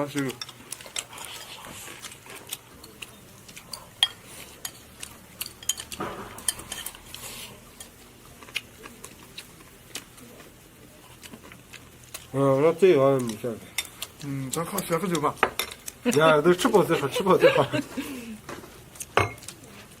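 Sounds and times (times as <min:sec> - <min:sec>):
utensils clinking on plates: 0:00.1 - 0:08.0, 0:14.7 - 0:17.9, 0:18.5 - 0:19.5.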